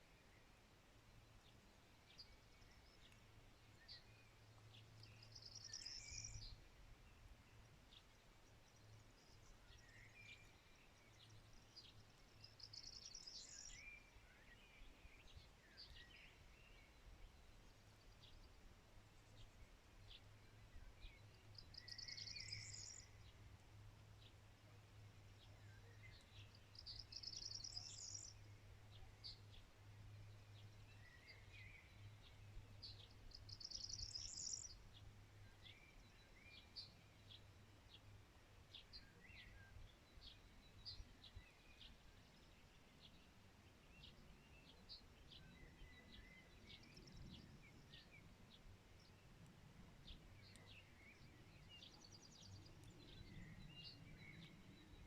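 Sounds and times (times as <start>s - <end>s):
songbirds chirping: 0.0s - 55.0s.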